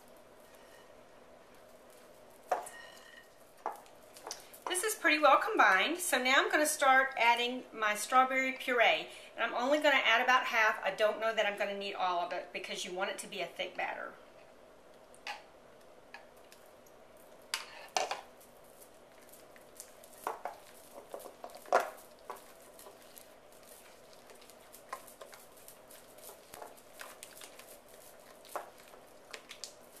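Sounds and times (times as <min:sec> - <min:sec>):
utensil stirring batter in a bowl: 0:00.0 - 0:05.4, 0:16.2 - 0:30.0.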